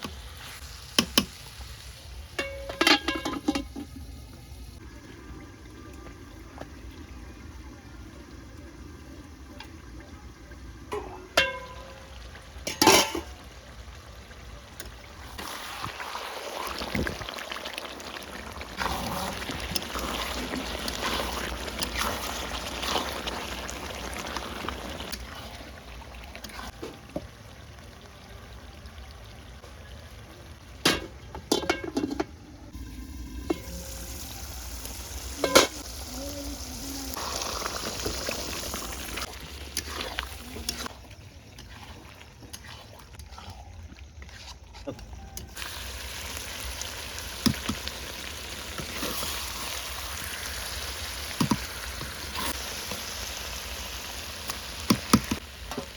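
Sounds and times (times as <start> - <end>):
liquid hissing and bubbling in pan: 15.1 - 27.2, 32.7 - 55.9.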